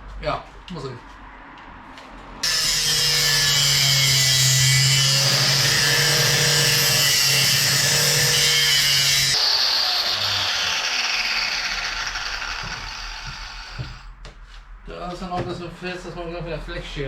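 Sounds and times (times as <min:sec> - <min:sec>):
angle grinder motor hum: 0:02.4 - 0:14.1.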